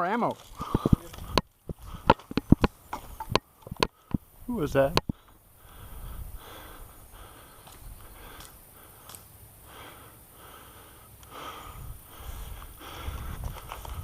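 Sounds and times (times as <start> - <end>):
person breathing hard: 0.6 - 2.3, 5.1 - 14.0.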